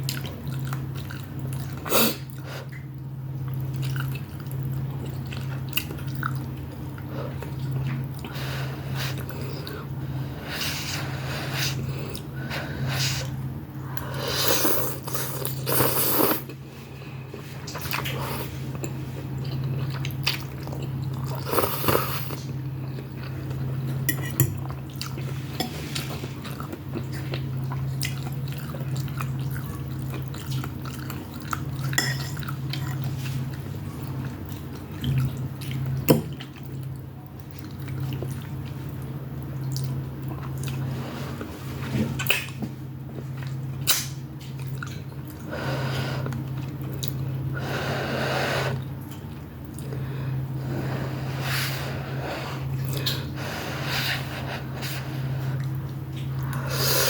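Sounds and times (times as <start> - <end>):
chewing: 0.0 - 2.9, 3.5 - 8.3, 17.3 - 45.5, 55.5 - 56.8
steady low hum: 0.0 - 57.0.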